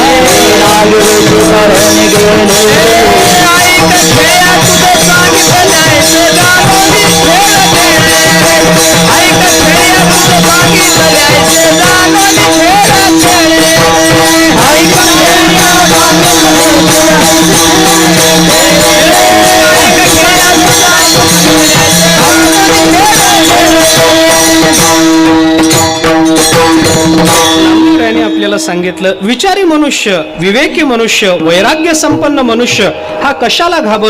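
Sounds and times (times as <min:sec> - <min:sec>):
voices singing devotional song: 0:00.0 - 0:25.4
jingling hand percussion: 0:00.0 - 0:34.0.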